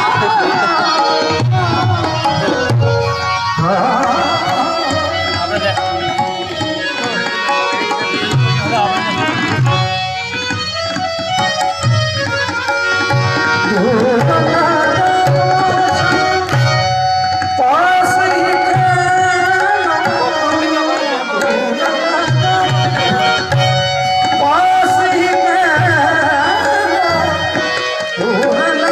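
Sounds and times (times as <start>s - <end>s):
hand drum rhythm: 0.0s - 28.9s.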